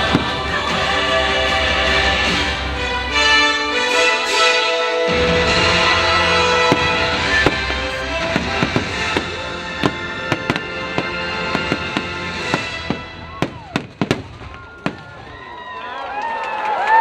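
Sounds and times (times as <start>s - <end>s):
fireworks bangs and crackles: 0.0s - 2.9s, 5.1s - 15.6s
orchestral music: 0.0s - 14.1s.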